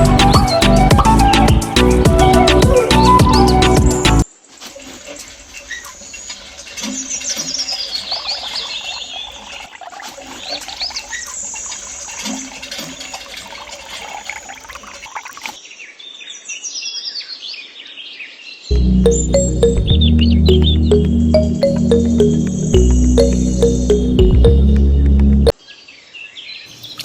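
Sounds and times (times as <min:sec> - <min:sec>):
small birds chirping: 0:05.9 - 0:15.5.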